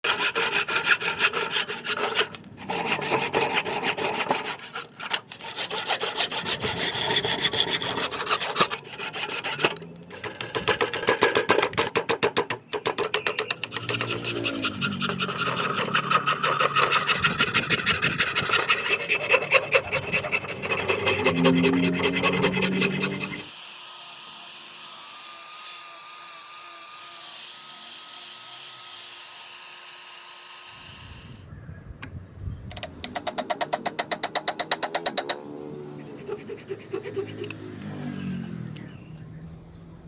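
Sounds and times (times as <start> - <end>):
hand tool rasping on wood: 0.0 - 12.0, 13.0 - 23.5, 36.0 - 37.6.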